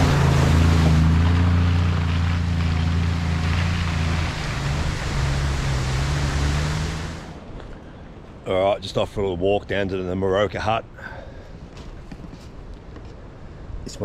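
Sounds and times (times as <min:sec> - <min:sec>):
vehicle engine running: 0:00.0 - 0:07.4
road and wind noise: 0:00.0 - 0:14.0.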